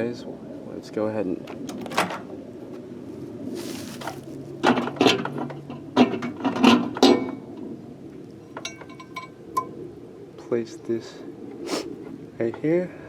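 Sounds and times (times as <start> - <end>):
short rustle: 3.4 - 4.5.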